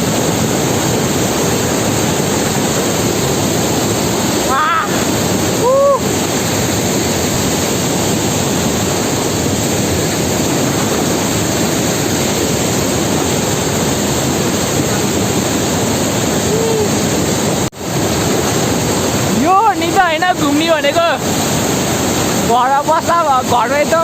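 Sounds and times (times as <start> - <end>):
waterfall rushing: 0.0 - 24.0.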